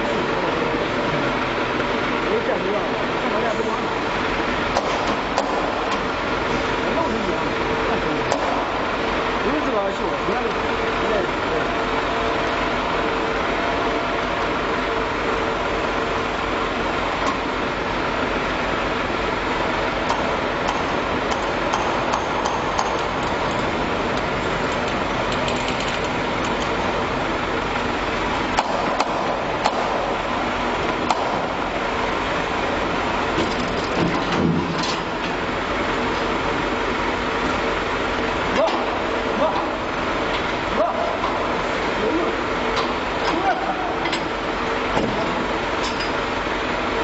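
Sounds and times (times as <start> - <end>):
industrial machinery drone: 0.0 - 47.0
clatter: 24.7 - 26.7.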